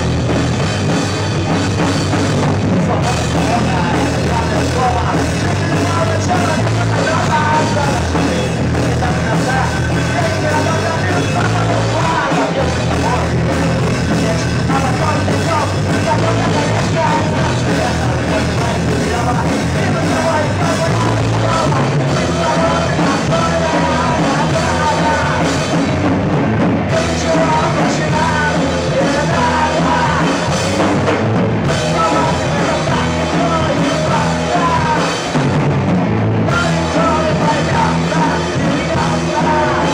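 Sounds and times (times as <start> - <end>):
rock band playing live: 0.0 - 39.9.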